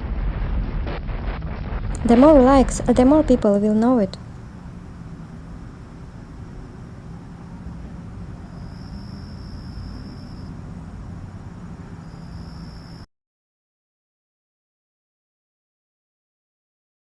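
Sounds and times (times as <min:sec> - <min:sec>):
faint high whine: 0:01.9 - 0:13.1
low rumbling background noise: 0:01.9 - 0:13.1.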